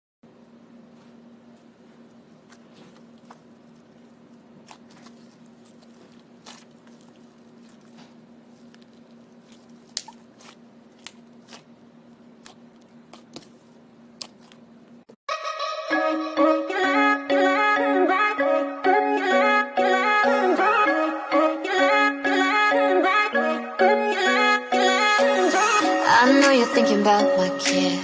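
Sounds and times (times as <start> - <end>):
slime squeezed by hand: 4.6 - 11.7.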